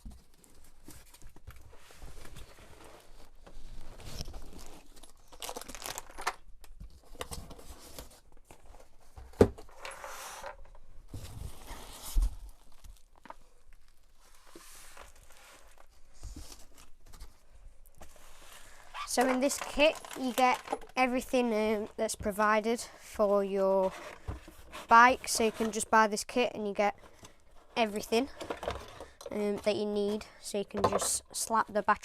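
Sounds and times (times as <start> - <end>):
packaging tearing and crinkling: 4.4 - 6.4.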